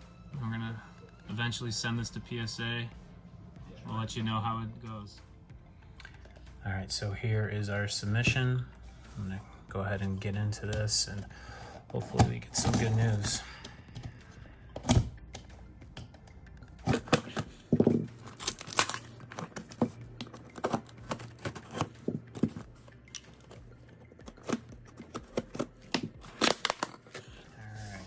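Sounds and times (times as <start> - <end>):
package tearing and crinkling: 18.1 - 22.0, 24.3 - 27.4.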